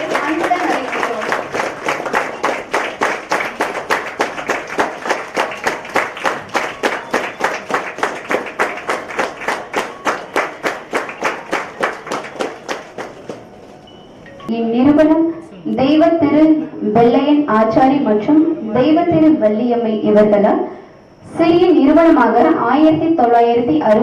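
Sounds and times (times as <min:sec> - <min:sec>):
audience clapping in time: 0:00.0 - 0:13.9.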